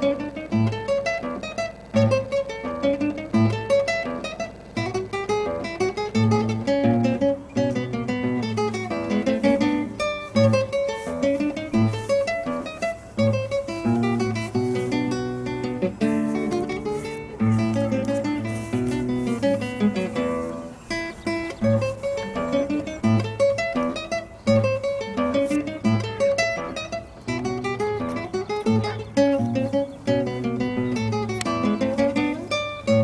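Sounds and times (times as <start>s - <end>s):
steady bass beat: 0.0s - 7.0s
acoustic guitar plucked and strummed: 0.0s - 33.0s.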